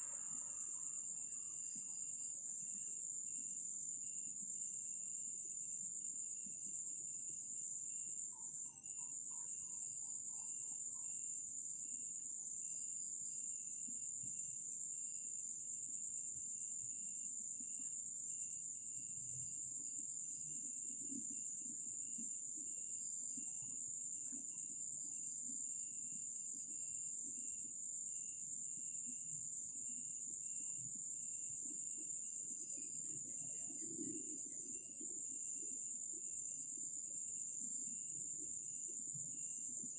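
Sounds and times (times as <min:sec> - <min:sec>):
insect chirping in pulses: 0:00.0 - 0:11.5, 0:16.9 - 0:39.9
crickets trilling: 0:00.0 - 0:39.9.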